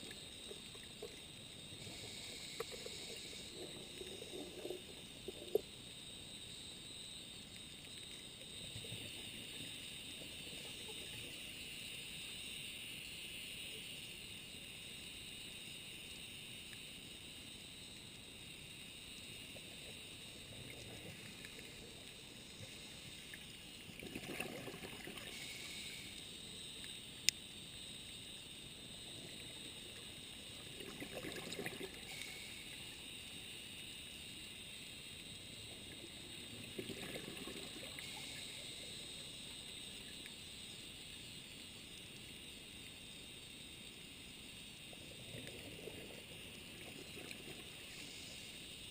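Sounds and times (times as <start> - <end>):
steady high hiss: 0.0 - 48.9
regulator bubbles gurgling: 19.5 - 25.7, 29.0 - 32.9, 35.8 - 38.8.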